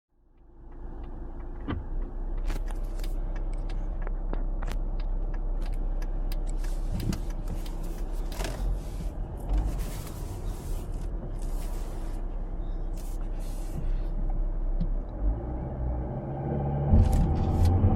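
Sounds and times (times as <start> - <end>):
car engine accelerating: 0.1 - 17.9
road rumble: 0.1 - 17.9
sharp clicks and knocks: 0.2 - 8.8.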